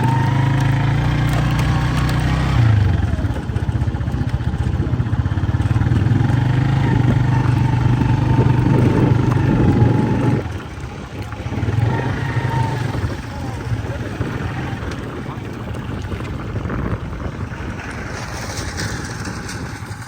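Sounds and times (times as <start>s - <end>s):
small engine running: 0.0s - 20.0s.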